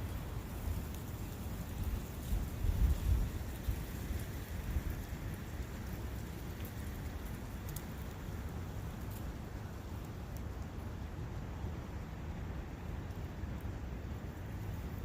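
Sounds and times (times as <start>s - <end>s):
faint ticks: 0.7s - 10.8s.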